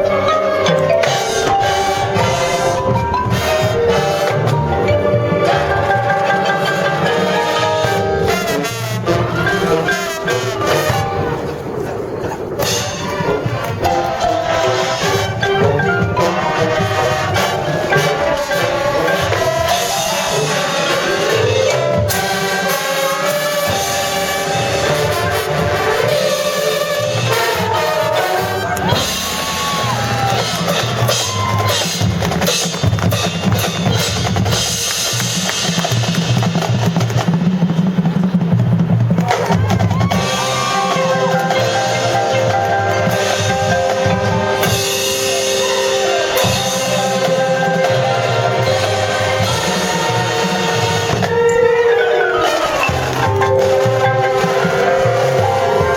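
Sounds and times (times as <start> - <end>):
brass sustaining chords: 0.0 - 11.8, 12.6 - 31.2, 40.2 - 55.9
drumline percussion: 0.0 - 55.9
marching band music: 0.0 - 55.9.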